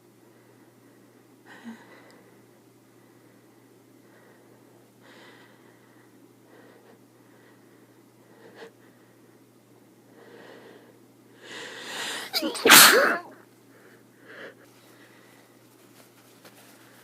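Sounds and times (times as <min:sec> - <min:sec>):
person sneezing: 0:12.0 - 0:13.4.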